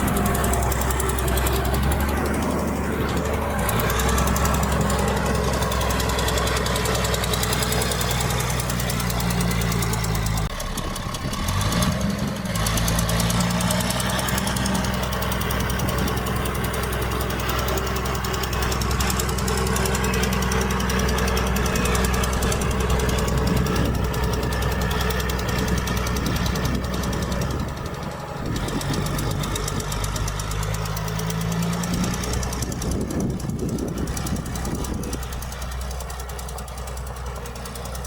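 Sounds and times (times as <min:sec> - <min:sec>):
diesel machinery engine hum: 0:00.0 - 0:38.0.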